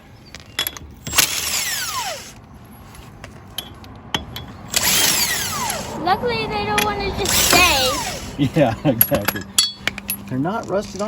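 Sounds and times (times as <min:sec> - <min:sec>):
power tool whine: 0:01.1 - 0:02.4, 0:04.7 - 0:06.0, 0:07.2 - 0:08.6.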